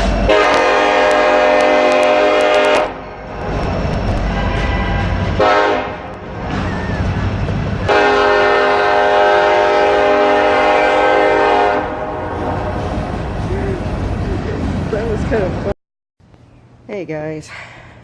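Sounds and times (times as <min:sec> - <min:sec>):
passing train rumble: 0:00.0 - 0:18.0
train horn blowing: 0:00.3 - 0:03.3, 0:04.2 - 0:06.3, 0:07.9 - 0:13.0.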